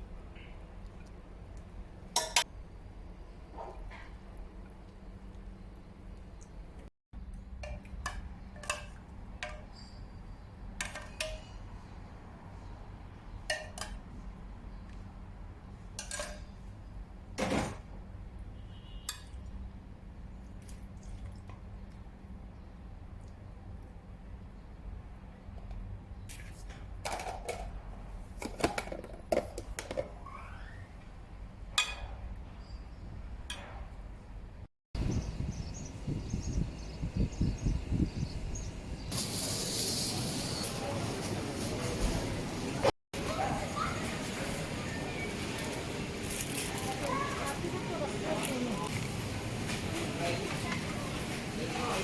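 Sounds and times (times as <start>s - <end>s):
utensils and dishes clinking: 2.1s - 2.5s, 16.0s - 16.7s.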